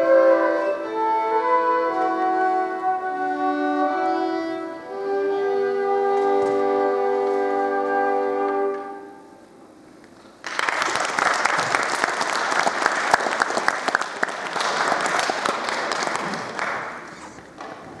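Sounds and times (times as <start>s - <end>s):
audience applauding: 10.4s - 18.0s.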